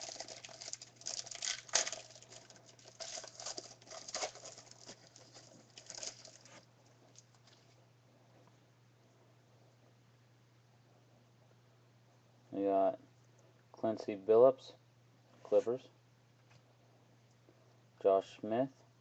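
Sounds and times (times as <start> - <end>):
cards and wrapping rustling: 0.0 - 7.8.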